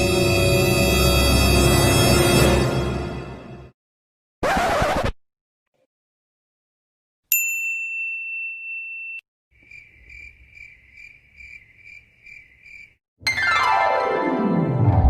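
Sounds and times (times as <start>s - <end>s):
clear ringing ding: 7.3s - 9.2s
cricket chirping: 9.6s - 13.0s.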